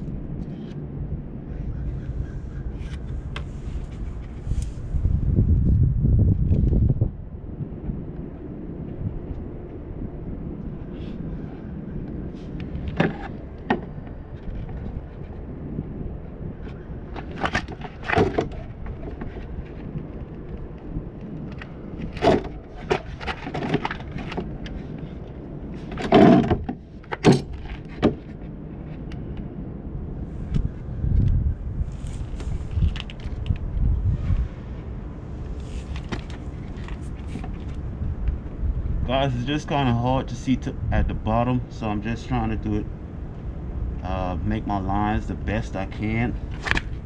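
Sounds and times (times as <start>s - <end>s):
low background rumble: 0.0s - 47.0s
knocks and clatters on plastic: 17.2s - 19.3s, 22.1s - 24.5s, 25.9s - 28.3s.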